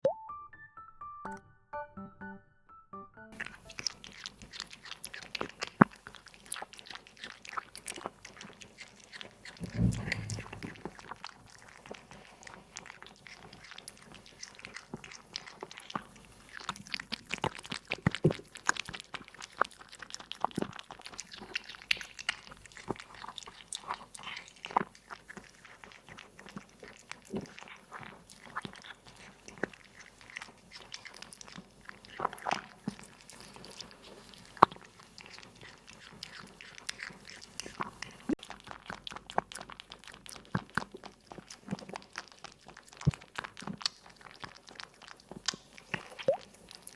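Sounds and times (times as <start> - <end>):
cat chewing and crunching food: 3.4 - 46.9
low rumble: 9.6 - 10.9.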